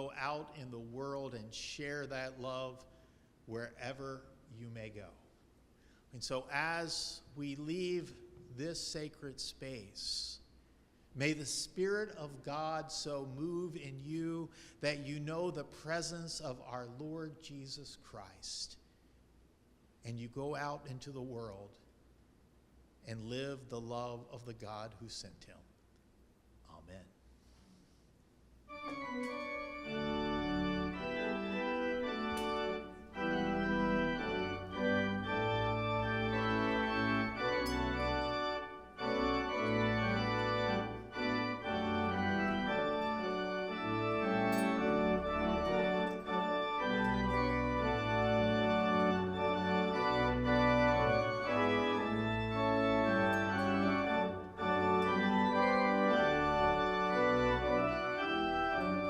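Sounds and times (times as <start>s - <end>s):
church organ playing chords: 0.0s - 2.7s, 28.7s - 59.0s.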